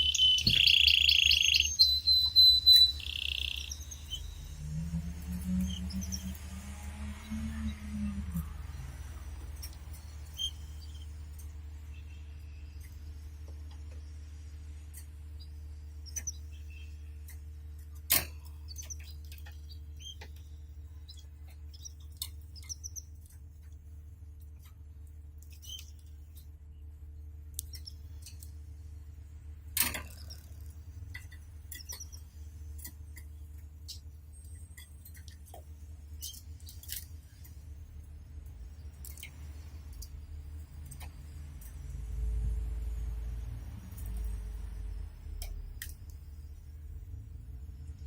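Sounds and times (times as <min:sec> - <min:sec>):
canaries chirping: 0:00.0 - 0:08.8, 0:09.4 - 0:13.0, 0:18.6 - 0:23.4, 0:31.1 - 0:32.9
steady low hum: 0:00.0 - 0:48.0.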